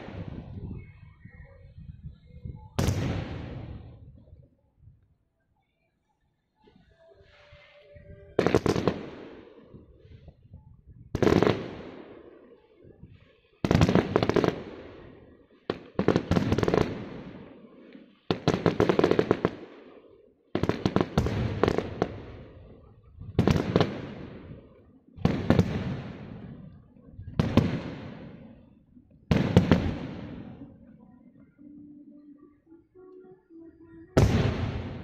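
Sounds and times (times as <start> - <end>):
fireworks crackling bangs: 29.3 - 30.6, 34.2 - 35.0.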